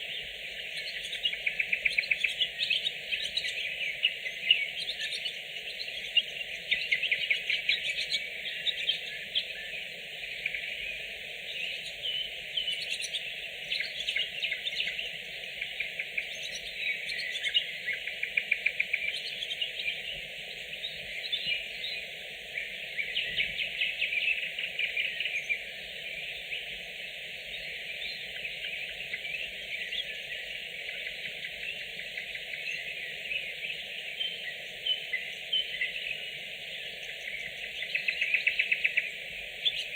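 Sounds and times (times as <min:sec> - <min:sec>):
low background noise: 0:00.0 - 0:39.9
nightingales singing: 0:00.0 - 0:39.9.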